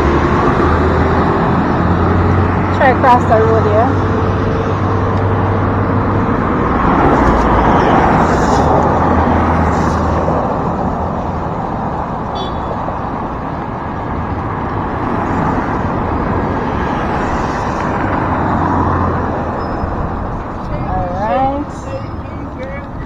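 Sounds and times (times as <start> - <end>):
vehicles driving past: 0.0 - 23.0.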